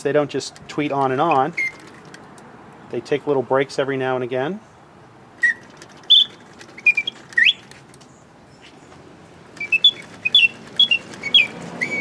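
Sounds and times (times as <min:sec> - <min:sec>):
mechanical bird whistling chirps: 0:01.3 - 0:02.1, 0:05.4 - 0:07.7, 0:09.6 - 0:12.0.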